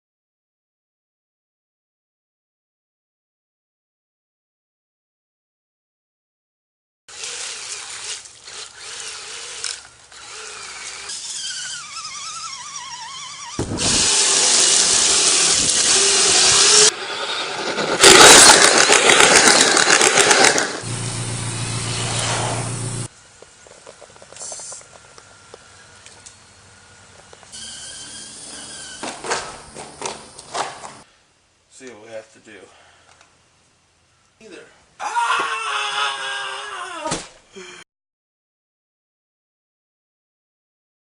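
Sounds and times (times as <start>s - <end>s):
toy truck electric motor whirring: 7.1s - 20.9s, 27.5s - 31.0s.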